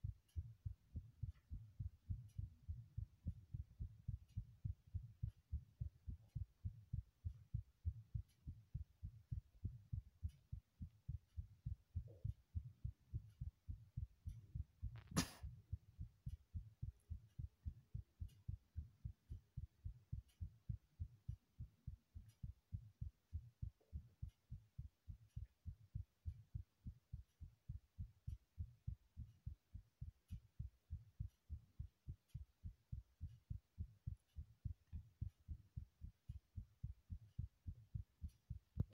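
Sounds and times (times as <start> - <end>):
heartbeat thumps: 0.0 - 38.9
sharp click: 15.0 - 15.4.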